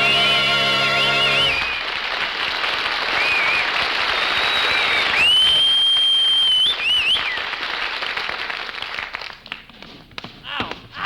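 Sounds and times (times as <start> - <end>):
crowd whistling: 0.0 - 2.0, 3.1 - 7.5
audience applauding: 0.0 - 9.6.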